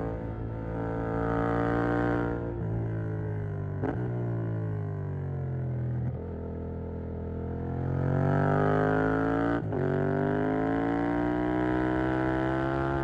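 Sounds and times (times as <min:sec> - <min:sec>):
motorcycle engine accelerating: 0:07.2 - 0:13.0.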